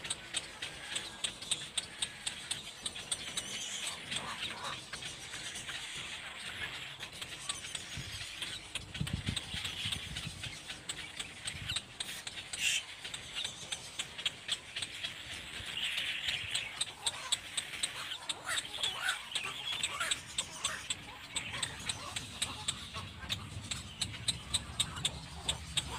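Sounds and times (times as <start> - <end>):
sharp clicks: 0.0 - 4.2, 6.4 - 25.9
cormorant chick squealing calls: 16.0 - 25.9.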